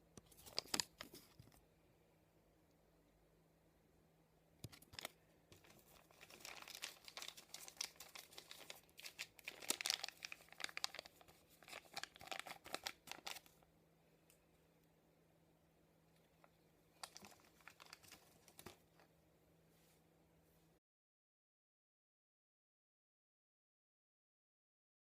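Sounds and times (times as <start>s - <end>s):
packaging crinkling and tearing: 0.3s - 1.4s, 4.7s - 13.6s, 17.0s - 19.0s.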